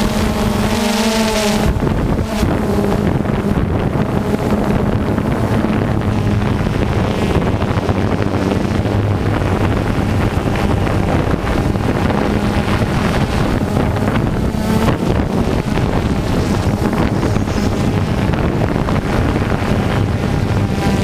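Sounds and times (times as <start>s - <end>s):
toy car motors buzzing: 0.0s - 21.0s
wind noise on microphone: 0.0s - 21.0s.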